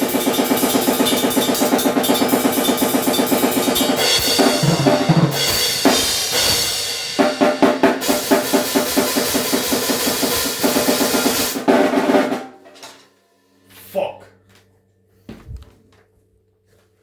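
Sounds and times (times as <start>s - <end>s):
cymbal wash: 0.0s - 7.4s
snare and cymbal blast beats: 0.0s - 12.5s
low tom hits: 4.0s - 7.0s.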